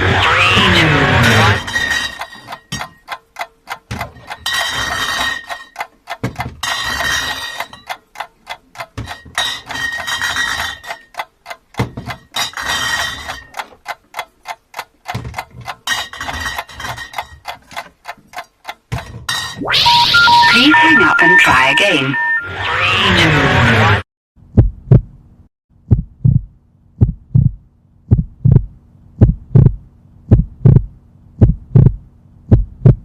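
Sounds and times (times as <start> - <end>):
clock-like ticking: 0.1 - 19.0
faint high tone: 19.6 - 23.4.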